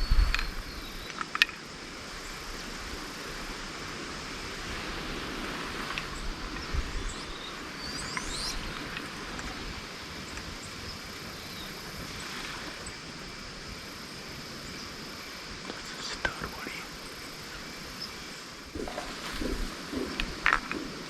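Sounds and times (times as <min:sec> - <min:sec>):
wind rustling vegetation: 0:00.0 - 0:21.0
high rising bird calls: 0:18.8 - 0:21.0.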